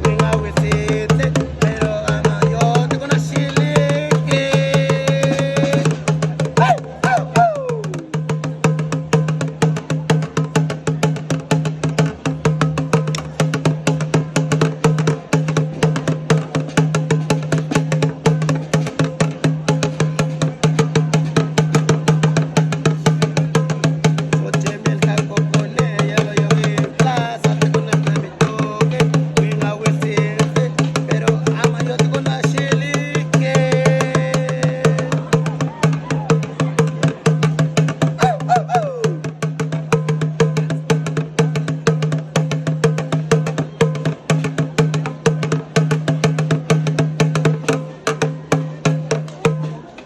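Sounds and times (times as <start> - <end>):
drum beaten in fast rhythm: 0.0 - 50.0
voices chanting: 2.8 - 8.2, 38.2 - 39.3.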